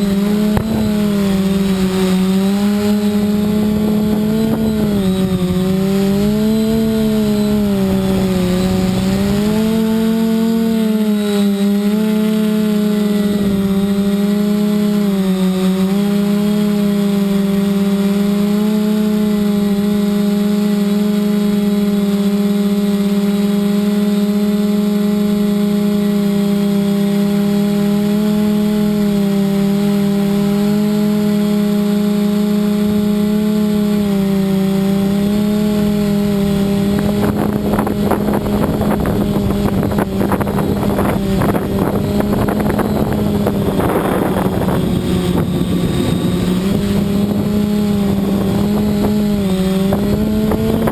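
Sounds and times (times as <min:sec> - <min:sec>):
wind buffeting microphone: 0:00.0 - 0:10.8, 0:35.8 - 0:50.9
drone propellers humming: 0:00.0 - 0:50.9.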